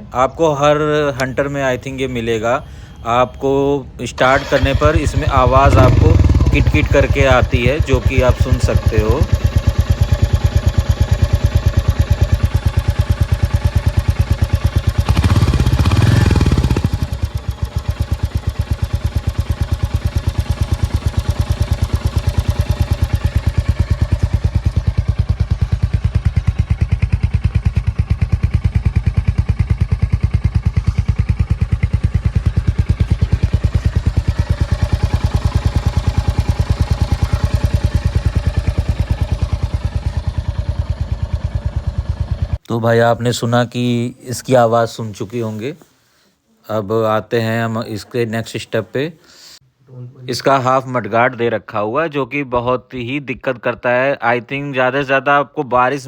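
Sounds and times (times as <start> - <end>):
engine tapping: 4.1 - 42.6
motorcycle engine idling: 4.2 - 42.6.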